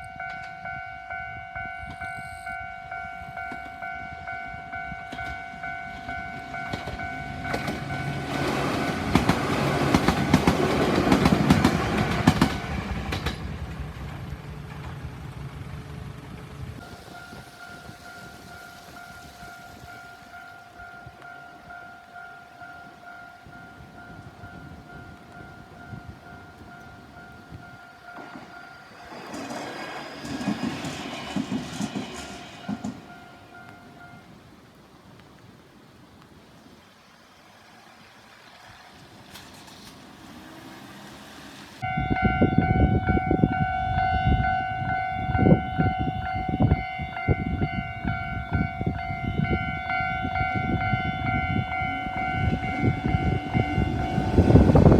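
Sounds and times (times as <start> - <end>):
level crossing warning bell: 0.0 - 12.8, 16.8 - 34.6, 41.8 - 54.9
train rumble and wheel clatter: 0.0 - 35.4, 36.2 - 54.9.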